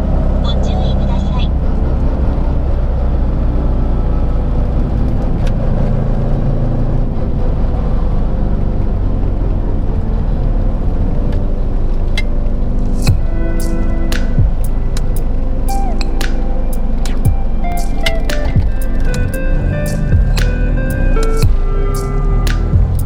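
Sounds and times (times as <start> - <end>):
car engine running: 0.0 - 23.0
sharp click: 13.0 - 23.0.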